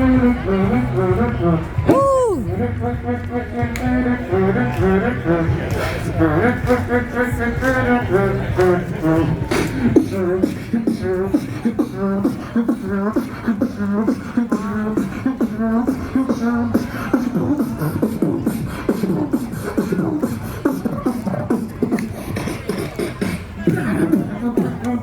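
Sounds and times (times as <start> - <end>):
pitched vocal line: 0.0 - 25.0
beatboxing drum hits: 8.5 - 25.0.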